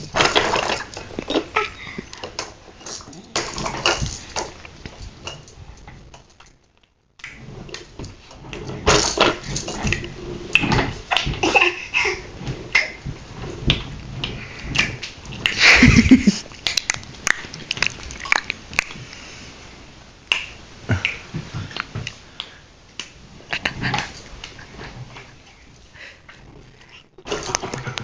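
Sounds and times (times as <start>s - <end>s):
dog clicks and scuffling: 16.5s - 19.0s.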